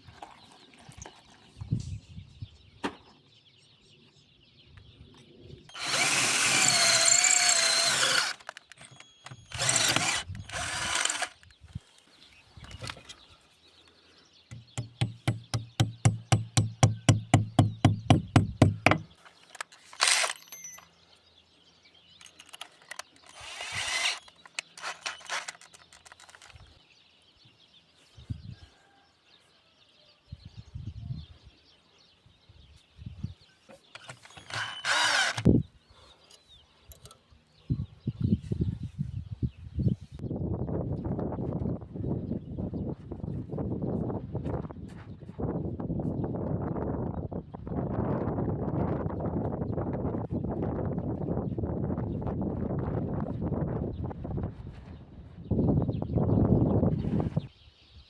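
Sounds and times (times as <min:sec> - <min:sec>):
power drill whining: 0:05.7 - 0:11.5, 0:19.8 - 0:20.8, 0:22.2 - 0:26.6, 0:34.0 - 0:35.5.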